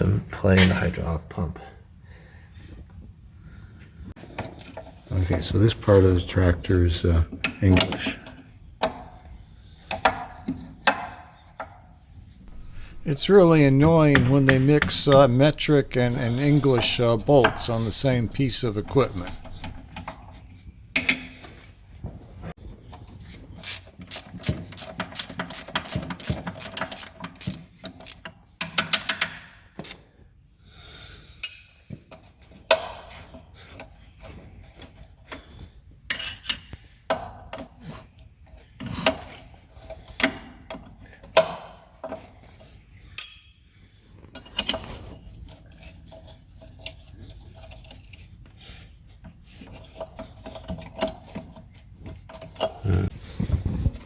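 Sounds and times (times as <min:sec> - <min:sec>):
metal clinks and knocks: 0:12.4 - 0:20.3
ratchet wrench clicking: 0:23.6 - 0:28.3.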